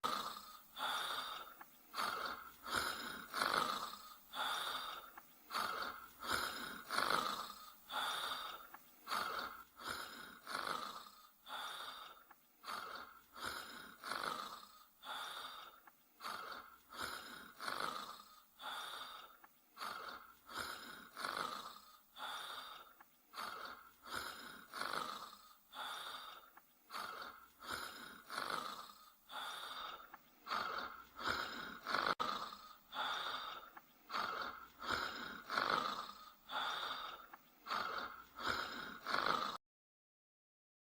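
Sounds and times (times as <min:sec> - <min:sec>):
dog snoring with whistle: 0:16.2 - 0:18.7, 0:19.8 - 0:22.3, 0:23.4 - 0:25.9, 0:26.9 - 0:39.6.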